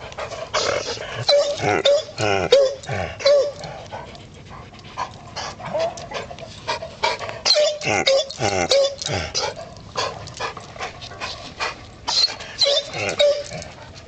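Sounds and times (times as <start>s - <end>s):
dog high whines: 7.4s - 9.1s, 12.1s - 13.6s.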